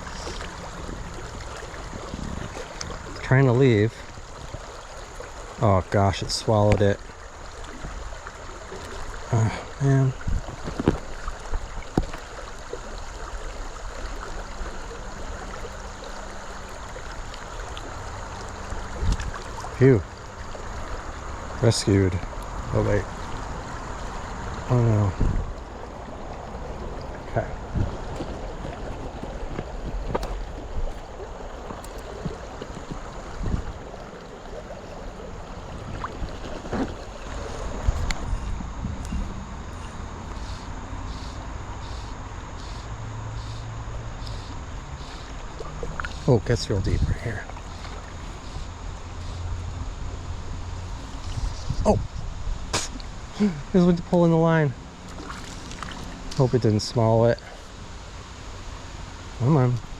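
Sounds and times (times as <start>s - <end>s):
creek water running: 0.0s - 59.9s.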